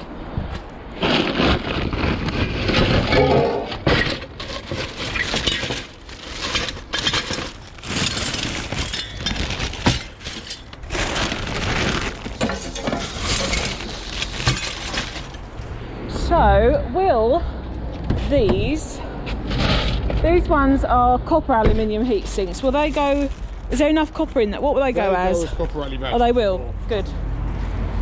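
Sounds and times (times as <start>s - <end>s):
metal scraps clattering: 1.0s - 15.6s, 19.4s - 20.2s.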